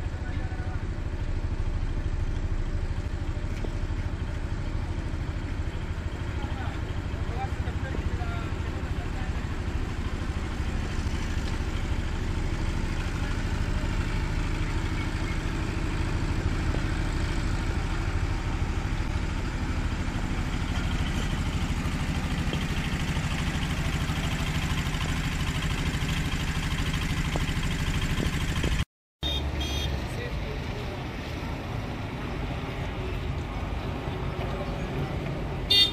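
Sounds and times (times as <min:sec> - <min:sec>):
bus diesel engine idling: 0:00.0 - 0:28.6.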